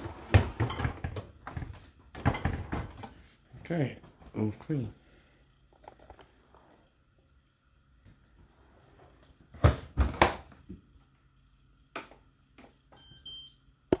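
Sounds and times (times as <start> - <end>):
dishwasher knocks and clatter: 0.0 - 3.1.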